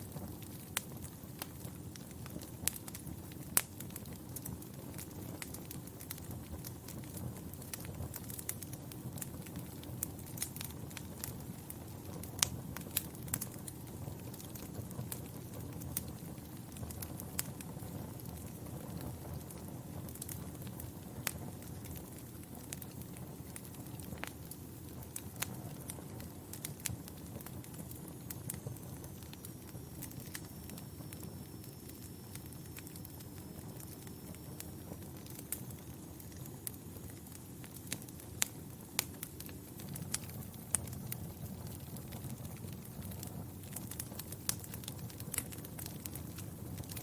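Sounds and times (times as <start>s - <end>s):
low rumble of flames: 0.0s - 47.0s
wood fire crackling: 0.0s - 47.0s.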